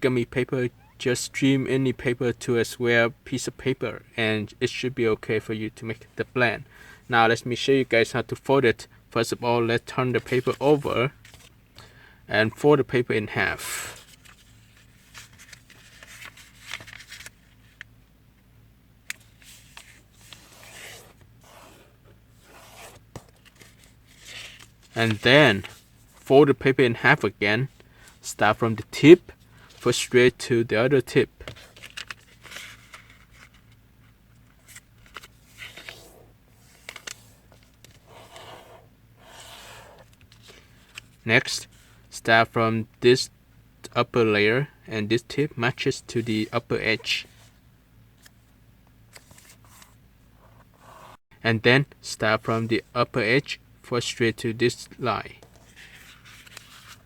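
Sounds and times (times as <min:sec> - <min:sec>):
paper rustling and scraping: 0:13.8 - 0:17.8, 0:19.2 - 0:26.2, 0:31.4 - 0:33.8, 0:34.4 - 0:41.2, 0:49.1 - 0:50.0, 0:55.4 - 0:57.0.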